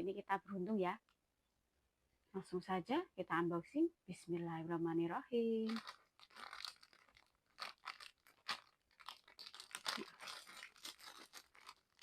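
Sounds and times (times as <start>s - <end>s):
plastic snack packet crinkling: 5.6s - 12.0s.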